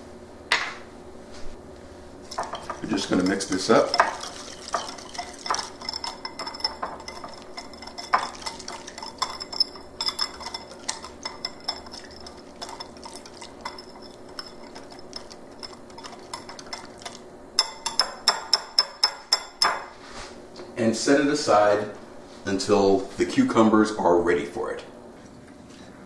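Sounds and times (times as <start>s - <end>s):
utensil stirring paste in glass bowl: 2.3s - 19.6s
clinks and scrapes against bowl: 2.3s - 19.8s.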